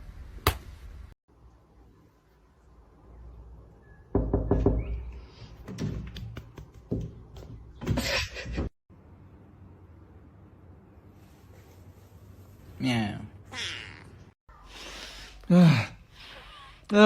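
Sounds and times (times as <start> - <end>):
knocks and thuds: 5.6 - 8.7.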